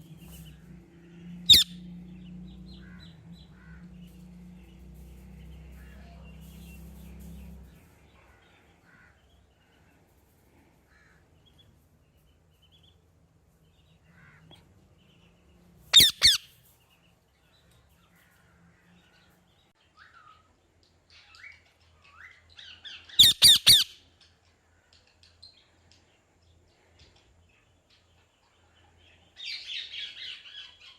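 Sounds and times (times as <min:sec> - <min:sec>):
parrot squawking: 0:01.5 - 0:01.8, 0:15.9 - 0:16.5, 0:23.2 - 0:24.0.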